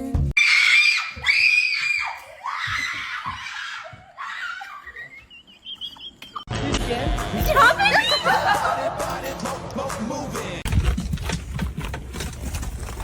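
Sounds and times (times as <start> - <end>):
high-pitched screaming cries: 0.4 - 5.3.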